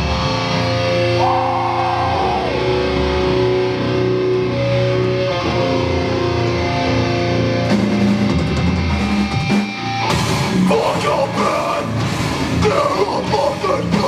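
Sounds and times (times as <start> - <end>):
electric guitars sustained notes: 0.0 - 14.0
drum hits with cymbals: 7.7 - 14.0.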